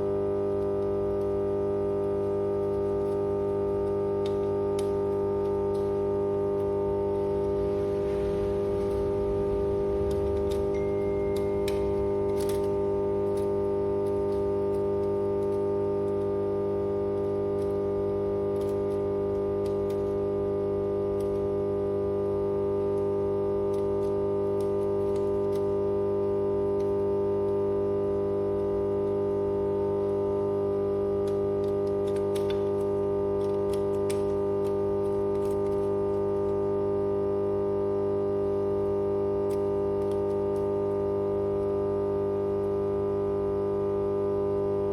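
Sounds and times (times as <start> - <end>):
power transformer humming: 0.0 - 44.9.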